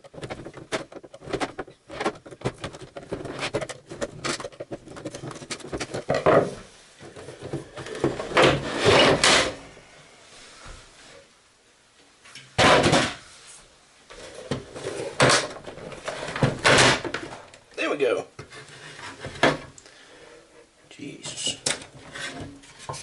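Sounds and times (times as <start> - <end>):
clicks and clatter of handling parts: 0.0 - 8.3.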